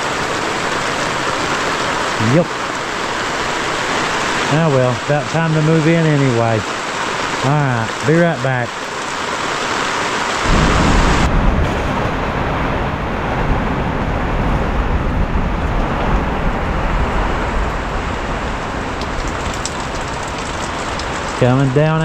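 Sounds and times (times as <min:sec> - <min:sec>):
heavy rain pouring: 0:00.0 - 0:22.0
deep low rumble: 0:10.4 - 0:21.9.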